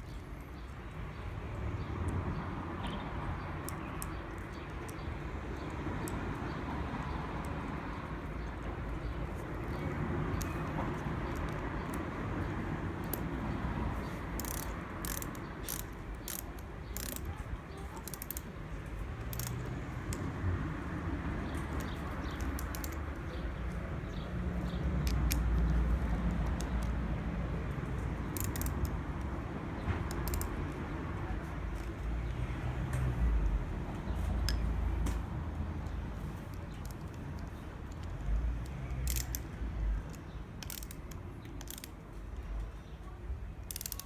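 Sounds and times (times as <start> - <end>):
ratchet wrench clicking: 3.6 - 6.5, 7.3 - 27.0, 27.8 - 29.4, 30.0 - 30.9, 31.7 - 32.0, 36.2 - 42.1, 43.6 - 44.0.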